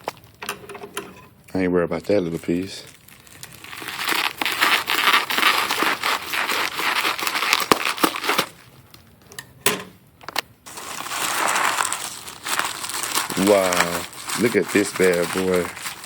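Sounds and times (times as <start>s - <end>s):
packing material crumpling: 2.0s - 9.0s, 10.7s - 16.0s.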